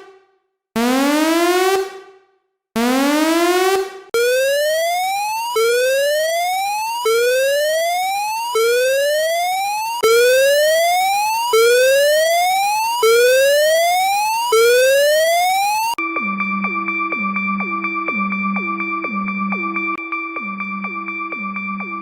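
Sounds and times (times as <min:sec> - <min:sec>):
electronic whooping alarm: 0:02.8 - 0:16.0.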